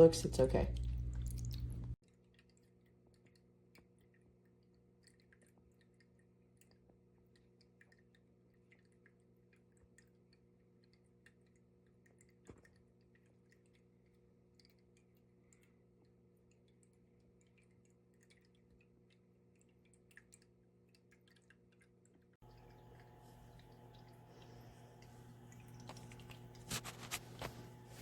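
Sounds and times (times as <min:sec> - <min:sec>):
low hum: 0:00.0 - 0:02.0, 0:22.4 - 0:28.0
tiny water drips: 0:00.4 - 0:26.8.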